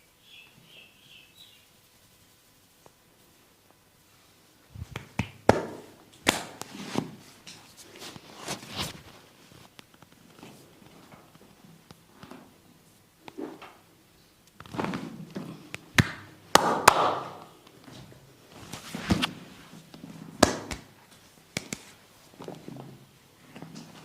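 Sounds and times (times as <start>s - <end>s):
hands rubbing on skin: 4.7s - 9.7s, 20.7s - 22.0s
hands smacking skin: 4.8s - 6.8s, 20.4s - 20.9s, 21.5s - 22.0s.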